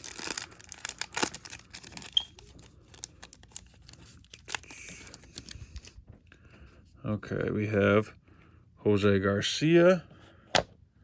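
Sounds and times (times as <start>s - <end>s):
foil wrapper tearing and crinkling: 0.0s - 5.6s.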